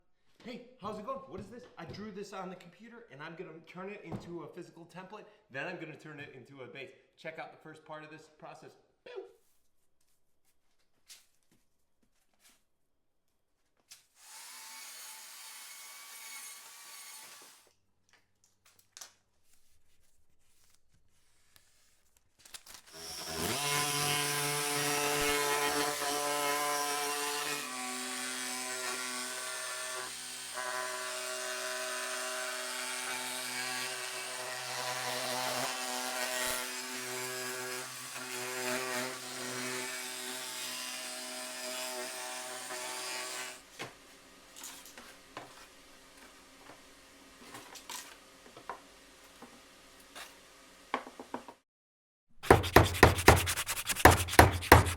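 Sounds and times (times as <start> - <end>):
power tool cutting wood: 14.2 - 17.7, 22.9 - 43.8.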